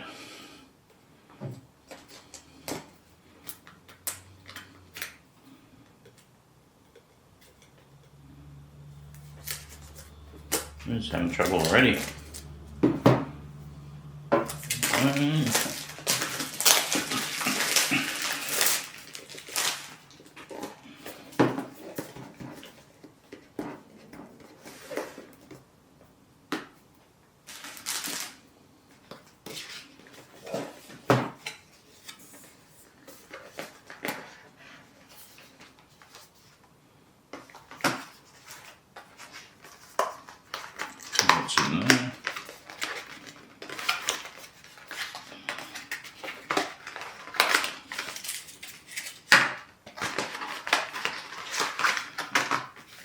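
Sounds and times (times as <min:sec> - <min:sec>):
packaging rustling and scraping: 0:09.1 - 0:13.7, 0:14.3 - 0:25.6, 0:27.5 - 0:36.7, 0:37.4 - 0:53.0.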